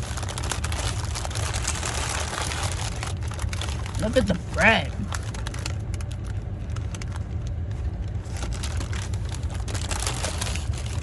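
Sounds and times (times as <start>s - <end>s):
steady low rumble: 0.0s - 11.0s.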